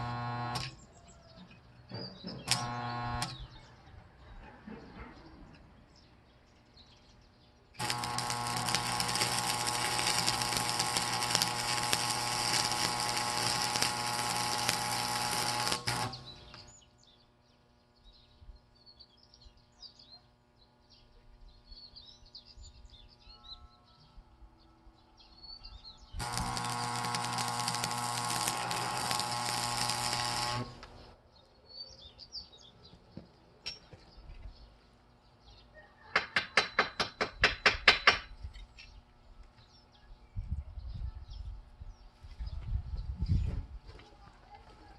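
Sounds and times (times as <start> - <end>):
arc welder hissing: 0.0 - 0.8, 2.5 - 3.4, 7.8 - 16.8, 26.2 - 31.2.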